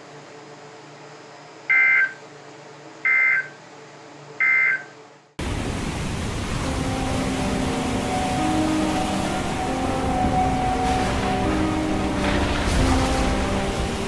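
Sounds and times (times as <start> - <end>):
loud steady hiss: 5.4 - 14.0.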